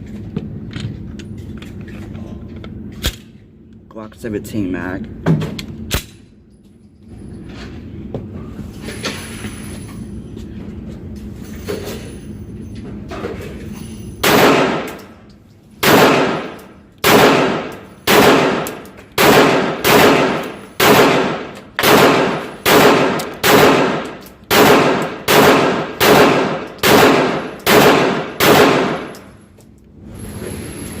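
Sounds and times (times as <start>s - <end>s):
gunshots with echo: 14.2s - 15.0s, 15.8s - 29.2s.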